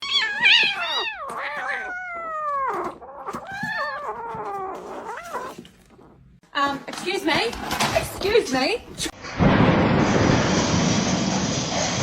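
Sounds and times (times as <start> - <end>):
cat meowing: 0.0 - 6.1.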